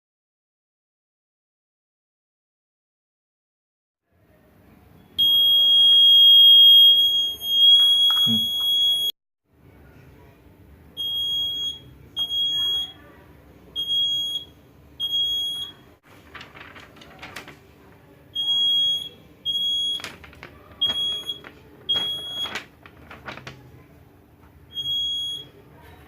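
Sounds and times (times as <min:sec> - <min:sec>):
high-pitched alarm buzzer beeps: 0:05.2 - 0:09.1, 0:24.7 - 0:25.6
clicks and rustling: 0:16.1 - 0:18.0, 0:19.9 - 0:23.8.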